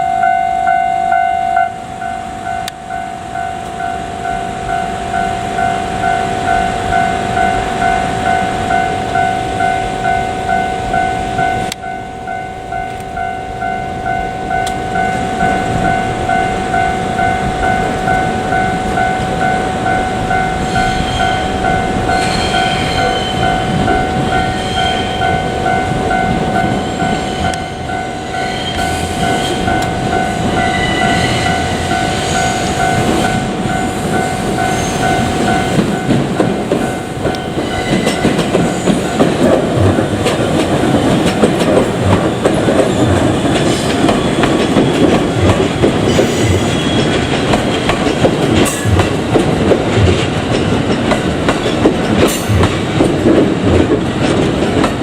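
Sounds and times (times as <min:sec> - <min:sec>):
electric train rumbling past: 0:00.0 - 0:55.0
level-crossing warning bell: 0:00.0 - 0:55.0
train wheel clickety-clack: 0:14.1 - 0:55.0.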